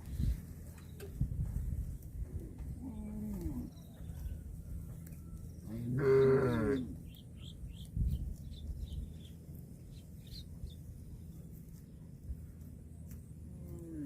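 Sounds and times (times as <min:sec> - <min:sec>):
small birds chirping: 0:00.0 - 0:14.0
calf mooing: 0:05.7 - 0:06.9.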